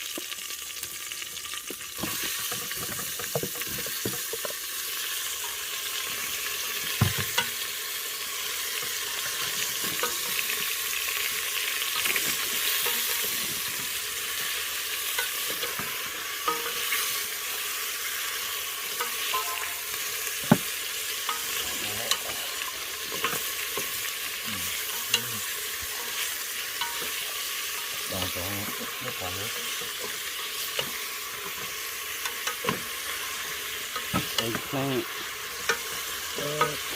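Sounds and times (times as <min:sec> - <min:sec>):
food sizzling in a pan: 0:00.0 - 0:36.9
utensil clicking against pan: 0:08.8 - 0:10.6, 0:12.0 - 0:13.4, 0:14.4 - 0:17.3, 0:23.0 - 0:28.3, 0:28.9 - 0:36.9.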